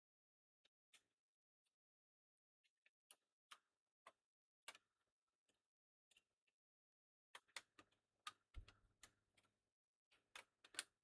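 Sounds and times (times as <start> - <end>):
clicks and taps of laptop parts: 7.3 - 11.0.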